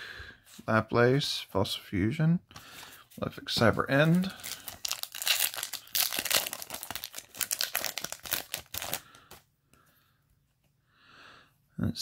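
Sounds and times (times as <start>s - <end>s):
foil wrapper crinkling and tearing: 4.0s - 9.4s.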